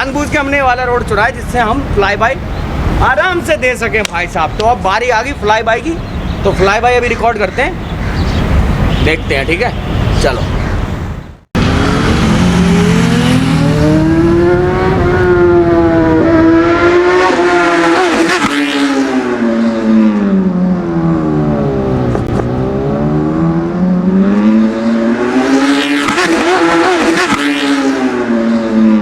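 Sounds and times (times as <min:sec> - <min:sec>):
motorcycle engine revving past: 0:11.6 - 0:29.0.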